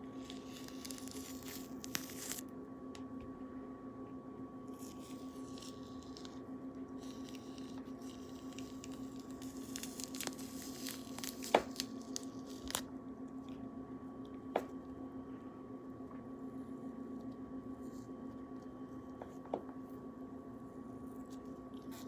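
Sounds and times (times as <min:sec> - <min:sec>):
steady low hum: 0:00.0 - 0:22.0
wet squishing and tearing of peel: 0:00.1 - 0:02.4, 0:04.8 - 0:12.9.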